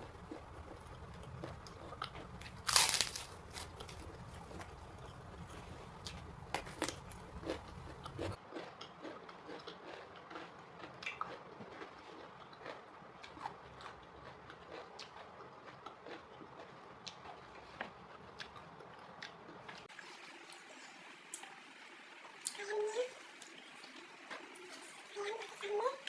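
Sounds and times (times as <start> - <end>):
soft chewing with wet clicks: 0.1 - 2.8, 3.6 - 19.9
crunchy bites: 0.3 - 17.3.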